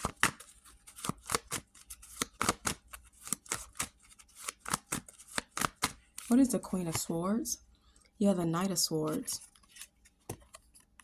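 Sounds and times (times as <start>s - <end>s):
cards being shuffled: 0.0s - 7.2s.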